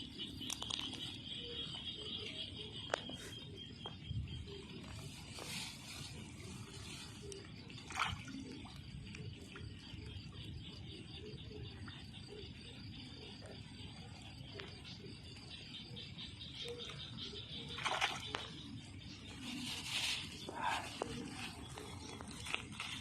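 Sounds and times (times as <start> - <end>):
insect chorus pulsing: 0.0 - 23.0
water sloshing and splashing: 4.8 - 9.8, 17.7 - 18.6.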